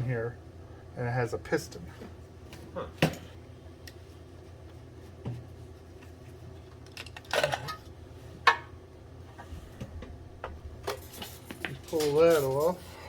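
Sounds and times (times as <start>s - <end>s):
low steady hum: 0.0s - 13.0s
metal tools clinking: 10.9s - 12.8s.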